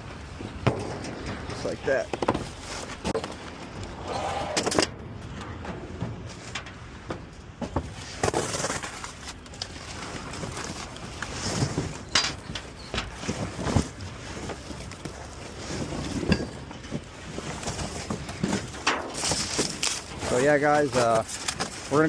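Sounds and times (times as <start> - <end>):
outdoor noise: 0.0 - 22.0
junk thrown off a trailer: 0.4 - 3.6, 4.5 - 9.5, 15.8 - 22.0.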